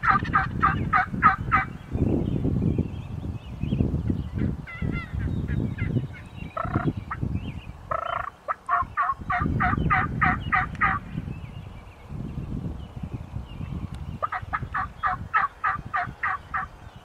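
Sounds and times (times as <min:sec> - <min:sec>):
wild turkey calling: 0:05.8 - 0:07.2, 0:07.9 - 0:11.0, 0:14.2 - 0:16.7.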